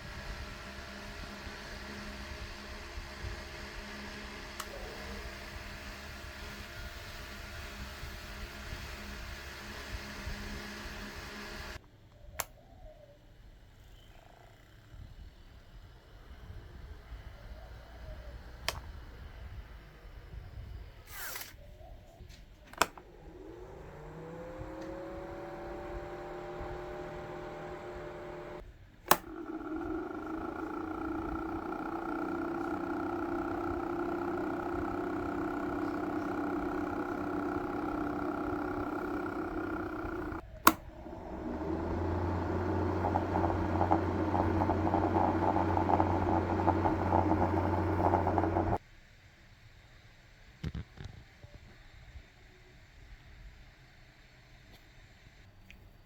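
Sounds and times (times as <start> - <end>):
small fan motor whirring: 0.0 - 11.8, 22.7 - 48.8
switch click: 22.7 - 23.1, 29.1 - 29.5, 38.8 - 41.0
fan rattle: 22.9 - 48.8.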